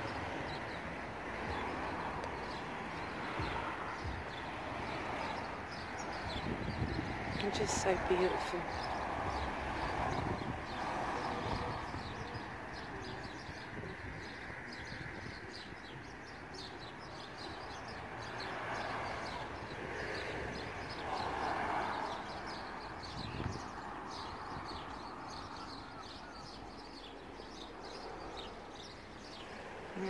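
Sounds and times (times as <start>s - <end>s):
small birds chirping: 0.0s - 30.0s.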